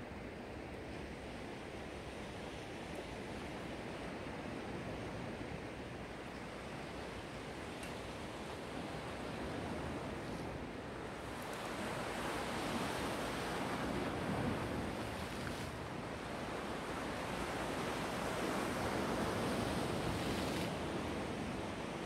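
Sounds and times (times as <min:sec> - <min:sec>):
waves washing in: 0:10.8 - 0:22.0.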